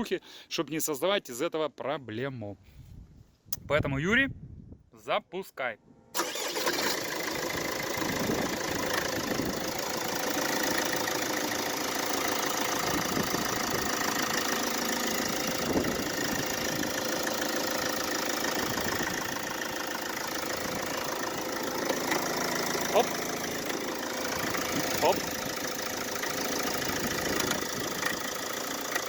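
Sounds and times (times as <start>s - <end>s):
diesel engine starting and idling: 6.2s - 29.0s.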